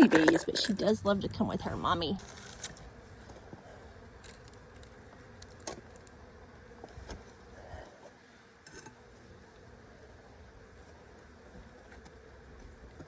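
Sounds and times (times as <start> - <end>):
honeybees humming: 0.0 - 13.0.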